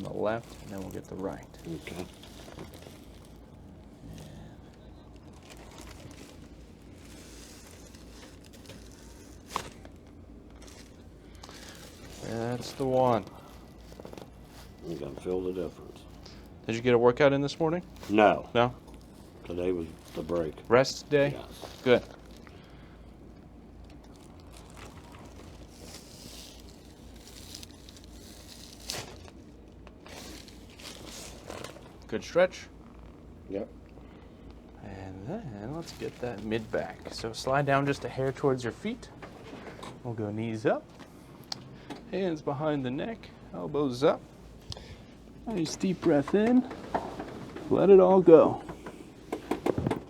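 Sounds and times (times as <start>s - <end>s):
clothing rustling on padded table: 24.2s - 32.0s.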